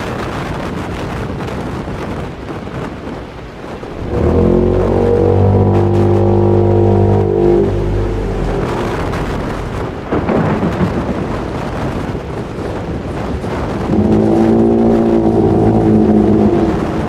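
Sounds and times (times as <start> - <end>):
deep droning tone: 3.8 - 10.2, 13.7 - 17.0
low rumble: 3.8 - 11.2, 13.4 - 17.0.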